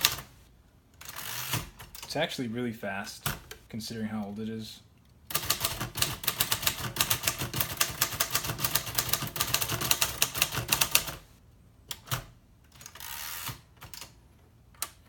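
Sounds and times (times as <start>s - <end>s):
manual typewriter typing: 0.0s - 0.4s, 5.3s - 11.2s.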